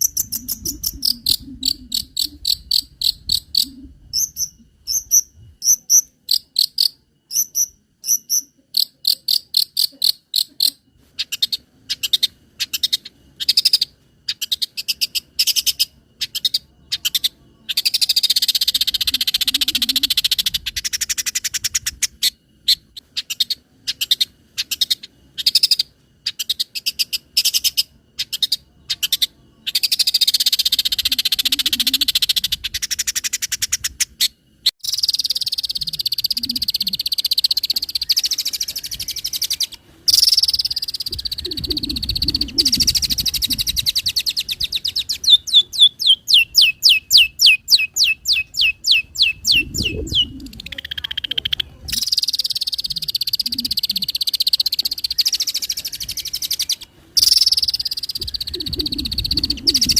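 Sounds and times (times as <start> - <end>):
shrike singing: 0.0 - 9.8, 34.8 - 59.9.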